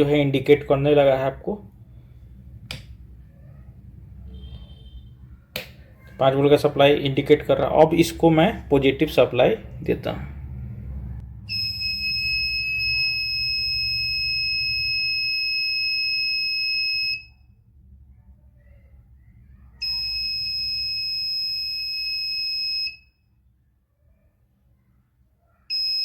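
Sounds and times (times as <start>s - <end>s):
high-pitched buzzer tone: 4.3s - 5.1s, 11.5s - 17.4s, 19.8s - 23.2s, 25.7s - 26.0s.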